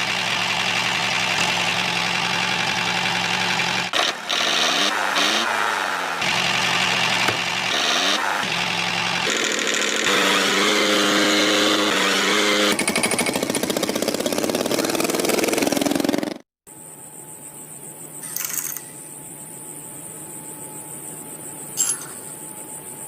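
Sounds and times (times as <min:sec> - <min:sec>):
small motor whining and chugging: 0:00.0 - 0:16.4.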